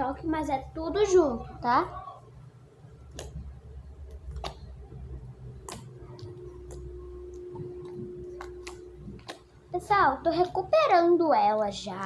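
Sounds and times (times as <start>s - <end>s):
low steady hum: 0.0s - 12.0s
slime clicking and cracking: 3.1s - 3.4s, 4.0s - 4.7s, 5.6s - 9.5s.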